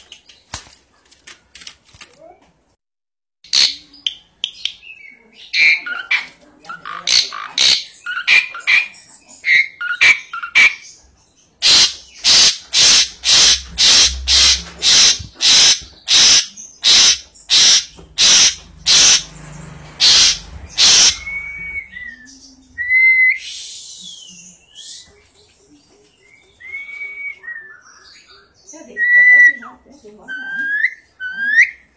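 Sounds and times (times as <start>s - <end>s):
starling chattering and calling: 5.4s - 11.0s, 11.6s - 22.7s.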